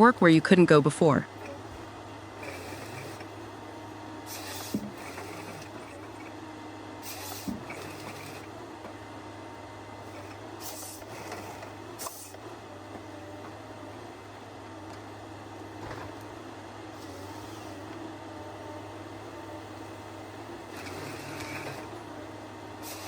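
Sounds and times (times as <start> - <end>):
hiss bursts: 4.3 - 4.8, 7.0 - 7.6, 10.6 - 11.1.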